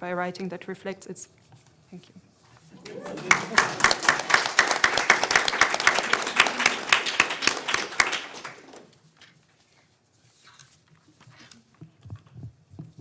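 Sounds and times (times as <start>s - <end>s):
audience applauding: 2.8s - 9.0s.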